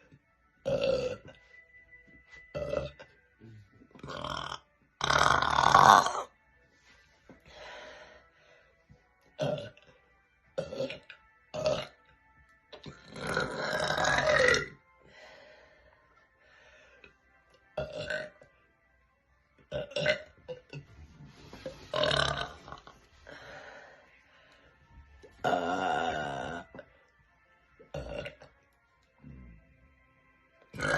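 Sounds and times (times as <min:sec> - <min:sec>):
woman burping loudly: 0:00.6 - 0:01.4, 0:02.5 - 0:03.1, 0:04.0 - 0:06.3, 0:09.4 - 0:09.8, 0:10.6 - 0:12.0, 0:12.8 - 0:14.8, 0:17.8 - 0:18.4, 0:19.7 - 0:20.8, 0:21.9 - 0:22.9, 0:25.4 - 0:26.8, 0:27.9 - 0:28.6.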